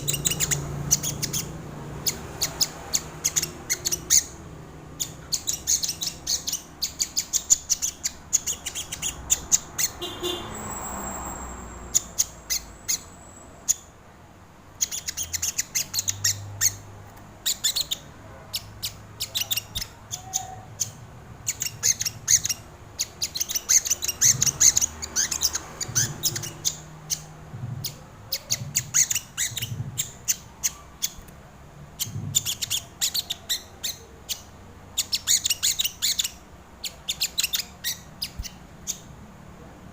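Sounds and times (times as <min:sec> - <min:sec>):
bird chips and twitters: 0:00.0 - 0:04.4, 0:05.0 - 0:13.9, 0:14.8 - 0:16.8, 0:17.4 - 0:31.2.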